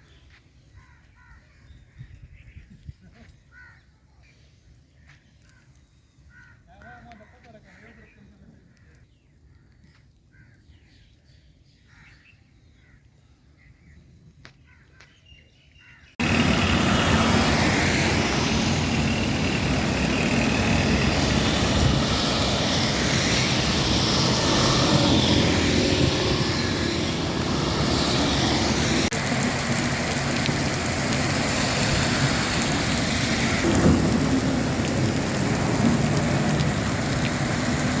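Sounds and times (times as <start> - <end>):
heavy rain pouring: 16.2 - 38.0.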